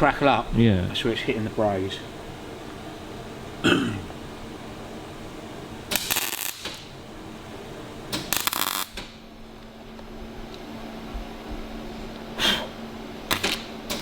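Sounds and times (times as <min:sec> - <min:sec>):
crackling welding arc: 0:05.9 - 0:07.0, 0:08.1 - 0:09.2, 0:13.3 - 0:14.0.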